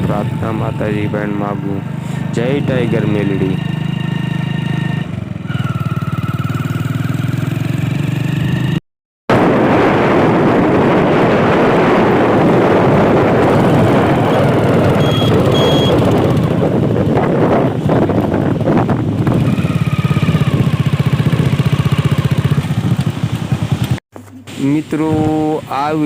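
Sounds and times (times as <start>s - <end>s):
vehicle engine running: 0.0s - 8.1s, 12.5s - 24.5s
driving noise and wind rush: 0.0s - 26.0s
short high beeps: 14.9s - 16.3s.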